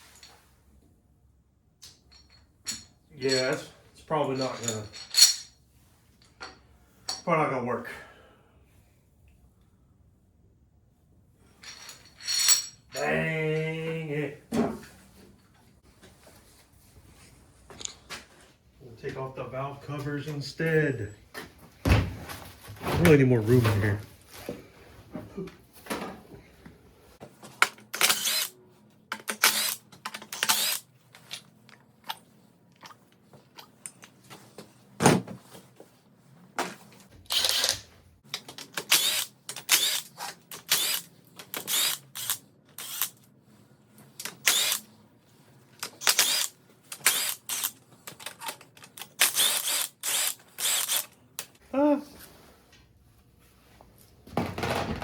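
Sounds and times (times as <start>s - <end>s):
ratchet wrench clicking: 49.2s - 51.1s.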